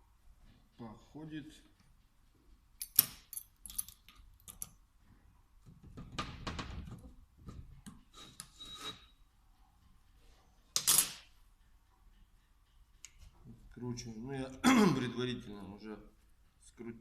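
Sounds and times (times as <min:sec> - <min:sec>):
small metal parts clicking: 0:02.8 - 0:04.8.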